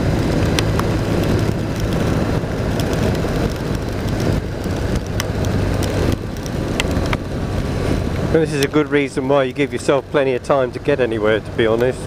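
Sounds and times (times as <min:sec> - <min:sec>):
motorcycle engine running: 0:00.0 - 0:12.0
wind rushing over microphone: 0:00.0 - 0:12.0
sharp ticks: 0:00.4 - 0:07.3.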